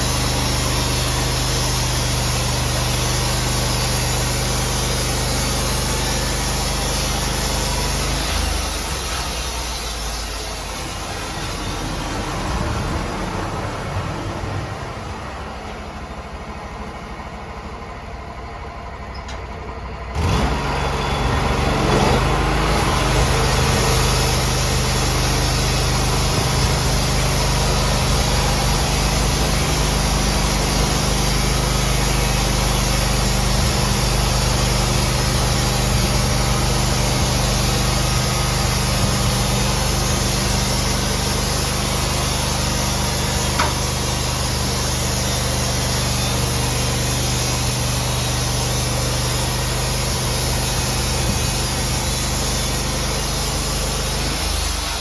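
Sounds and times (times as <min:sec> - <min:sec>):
engine revving: 0:20.1 - 0:55.0.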